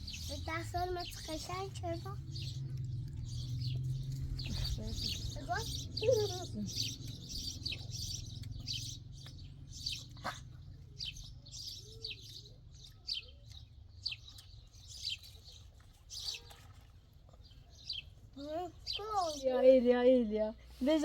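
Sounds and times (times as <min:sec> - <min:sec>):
faint low rumble: 0:00.0 - 0:11.4
small birds chirping: 0:00.0 - 0:21.0.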